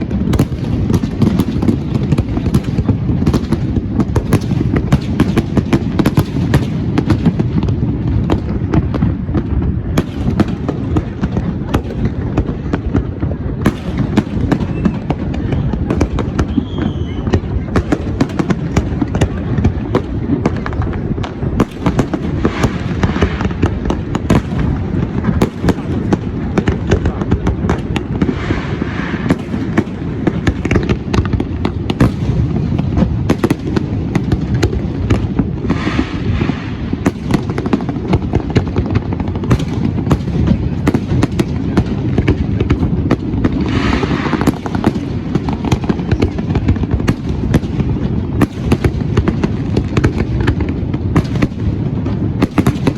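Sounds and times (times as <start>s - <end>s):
fireworks crackle: 0.0s - 52.9s
fireworks exploding: 0.0s - 52.9s.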